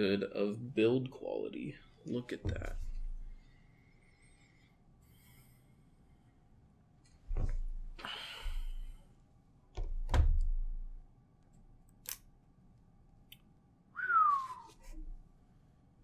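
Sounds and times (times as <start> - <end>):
sharp click: 11.9 - 12.3.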